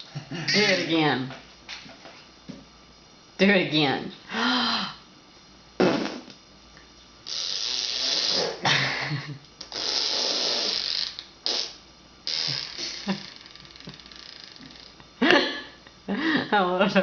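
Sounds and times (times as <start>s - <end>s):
lip raspberry buzzes: 0.0s - 1.0s, 5.8s - 6.4s, 7.2s - 15.7s.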